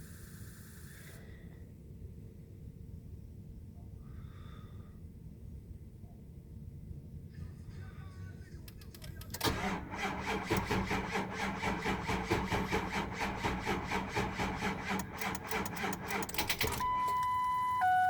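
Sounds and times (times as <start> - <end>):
diesel engine starter cranking: 8.7 - 18.0
electronic warning tone: 16.8 - 18.0.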